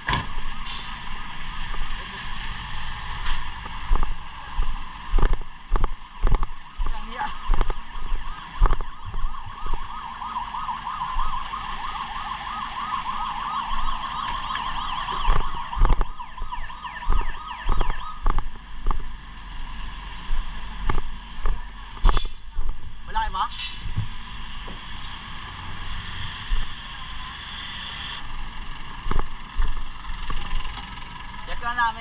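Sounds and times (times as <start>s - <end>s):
warbling emergency siren: 3.9s - 5.4s, 6.1s - 20.1s, 24.3s - 28.3s.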